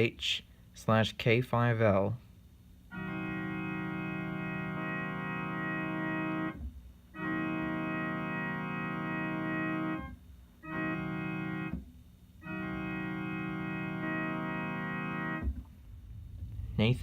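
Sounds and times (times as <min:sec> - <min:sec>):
electronic keyboard train horn chords: 0:02.9 - 0:11.8, 0:12.4 - 0:17.0.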